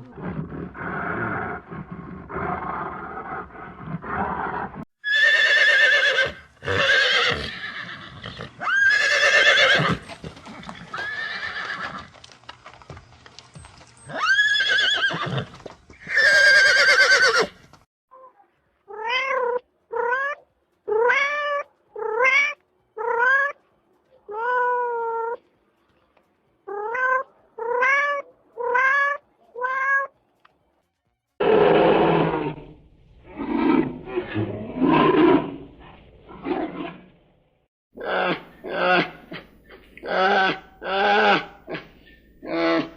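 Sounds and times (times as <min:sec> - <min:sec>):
cat meowing: 0:26.7 - 0:30.1.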